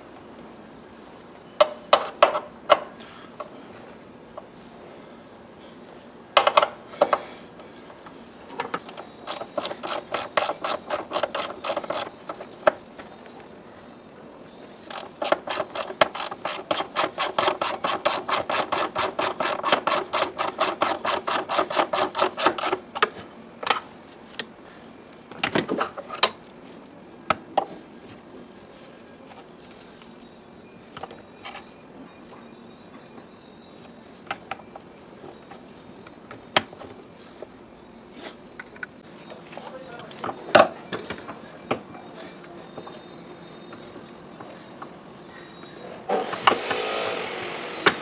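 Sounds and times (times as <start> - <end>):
ratchet wrench clicking: 8.8 - 12.5, 14.9 - 22.8.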